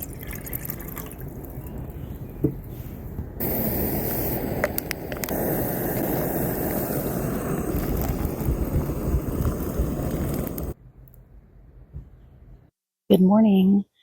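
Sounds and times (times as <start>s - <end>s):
wind on microphone: 3.1s - 10.8s.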